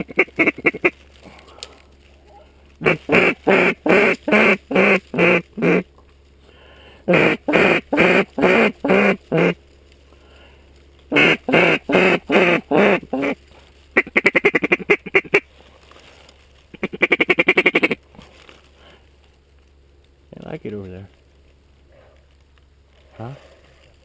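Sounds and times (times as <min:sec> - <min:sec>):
duck call quacks: 0:00.0 - 0:01.0, 0:02.8 - 0:05.8, 0:07.1 - 0:09.6, 0:11.1 - 0:13.4, 0:14.0 - 0:15.4, 0:16.7 - 0:18.0.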